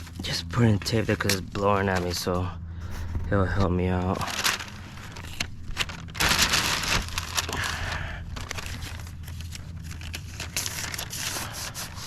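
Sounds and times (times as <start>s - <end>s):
masking sheet crinkling: 4.0s - 12.0s.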